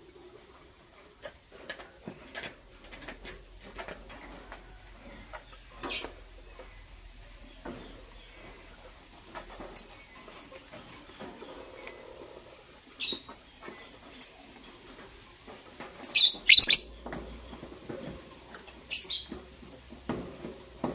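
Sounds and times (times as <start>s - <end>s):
lovebirds chirping: 13.0s - 15.0s, 15.7s - 17.1s, 18.9s - 19.3s.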